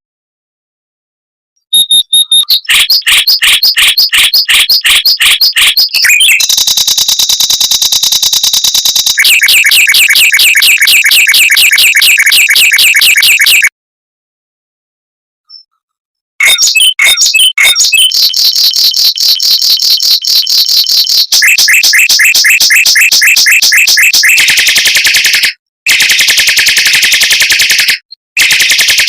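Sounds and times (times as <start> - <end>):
mockingbird singing: 1.6 - 6.9, 9.2 - 13.7, 16.4 - 24.8.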